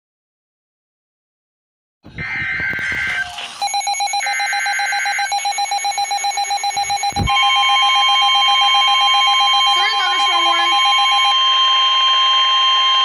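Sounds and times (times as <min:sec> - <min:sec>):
rapidly pulsing alarm tone: 0:02.2 - 0:13.0
steady higher alarm tone: 0:02.2 - 0:13.0
warbling digital alert bursts: 0:09.5 - 0:11.3.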